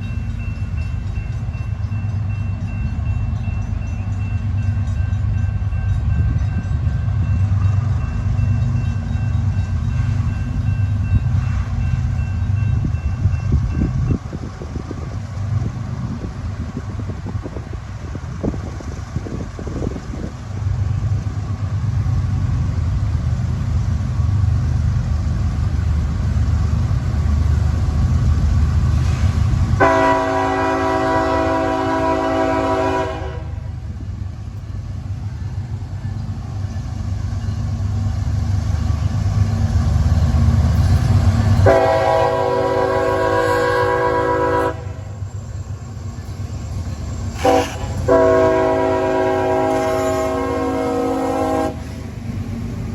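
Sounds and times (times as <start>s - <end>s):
diesel locomotive rumble: 0.0s - 52.9s
train horn blasts: 29.8s - 33.7s, 41.6s - 45.1s, 47.4s - 51.9s.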